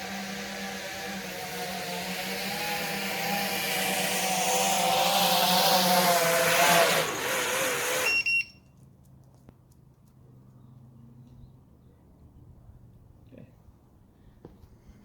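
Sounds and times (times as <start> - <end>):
quadcopter motors whining: 0.0 - 8.5.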